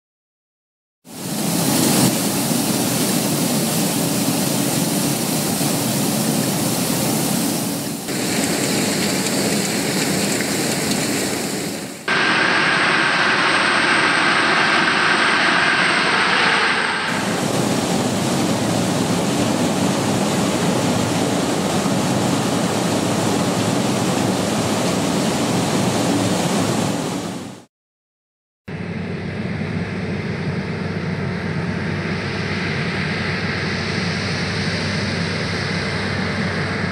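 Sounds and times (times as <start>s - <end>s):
combine harvester running: 1.3s - 27.2s.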